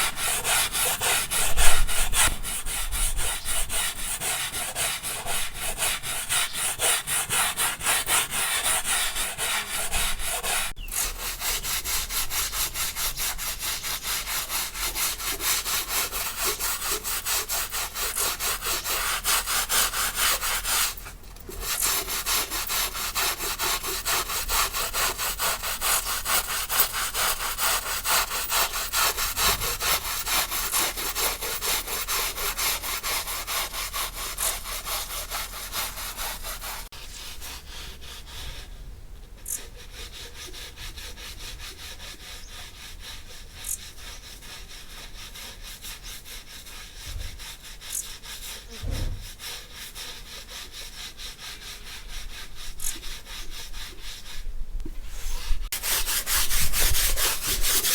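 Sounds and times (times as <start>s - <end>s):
rapid scrubbing strokes: 0.0s - 38.7s, 39.7s - 57.9s.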